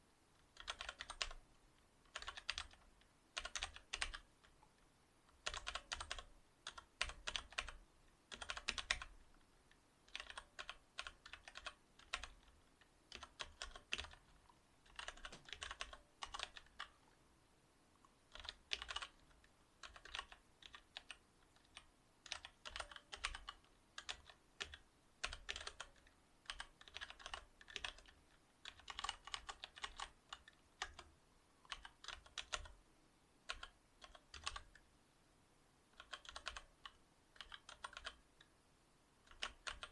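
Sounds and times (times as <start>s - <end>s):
mechanical keyboard typing: 0.5s - 1.4s, 2.0s - 4.3s, 5.3s - 9.1s, 10.1s - 17.0s, 18.3s - 32.8s, 33.5s - 34.8s, 35.9s - 38.2s, 39.2s - 39.9s.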